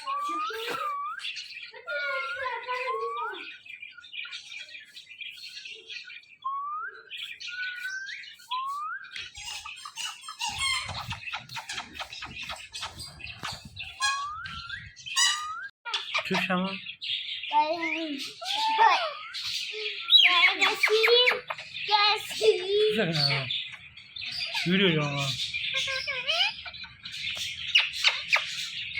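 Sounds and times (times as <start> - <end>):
parrot squawking and chirping: 0.0 - 6.3, 7.1 - 28.9.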